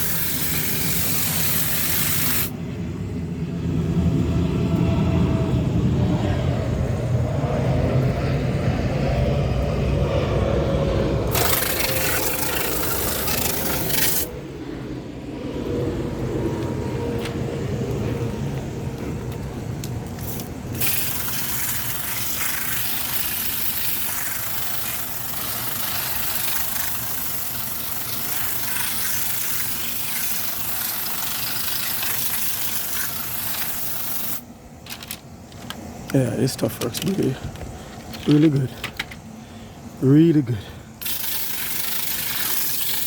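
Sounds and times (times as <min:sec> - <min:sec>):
garden hose spraying water: 0:00.0 - 0:02.6, 0:11.3 - 0:14.3, 0:19.9 - 0:37.3, 0:41.0 - 0:43.0.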